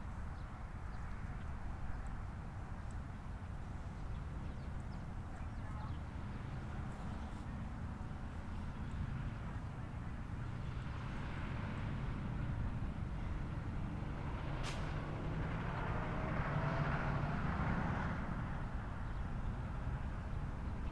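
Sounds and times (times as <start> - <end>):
road traffic rumble: 0.0 - 20.9
vehicle approaching: 3.4 - 20.9.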